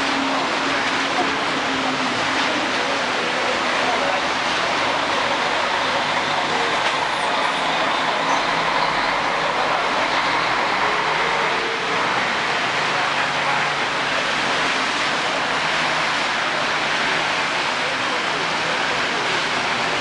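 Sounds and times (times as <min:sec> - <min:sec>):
heavy rain hissing: 0:00.0 - 0:20.0
tyres on wet road: 0:00.0 - 0:20.0.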